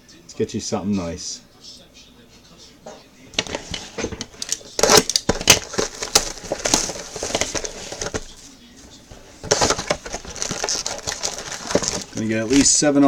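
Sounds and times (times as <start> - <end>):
plastic and cardboard packaging crinkling: 3.4 - 13.0.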